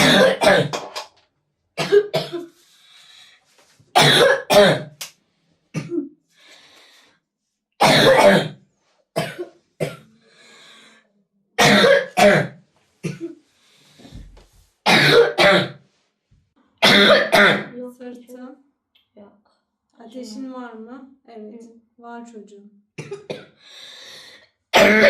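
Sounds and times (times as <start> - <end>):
boy coughing: 0.0 - 0.8, 1.8 - 2.5, 4.0 - 5.0, 5.8 - 6.1, 7.8 - 8.6, 9.2 - 10.1, 11.6 - 13.4, 14.9 - 15.8, 16.8 - 17.7, 23.0 - 23.6, 24.8 - 25.0
noisy breaths drawn in: 2.5 - 3.6, 6.3 - 7.4, 10.1 - 11.1, 13.4 - 14.4, 23.6 - 24.6.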